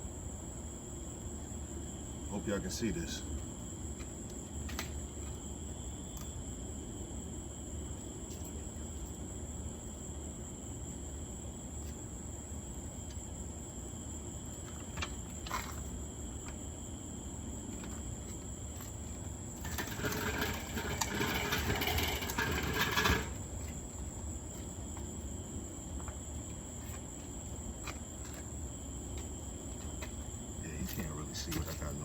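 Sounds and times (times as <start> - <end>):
rattling and clattering: 19.5 - 23.8.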